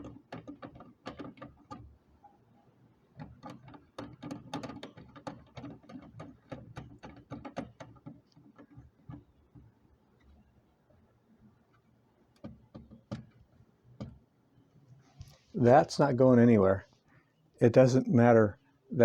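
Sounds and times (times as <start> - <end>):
plastic bird feeder rattling: 0.0 - 2.0, 3.0 - 10.6.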